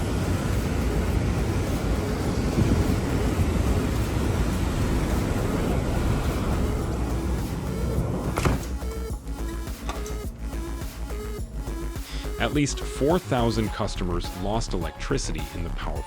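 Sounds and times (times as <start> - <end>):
storm wind on microphone: 0.0 - 8.8.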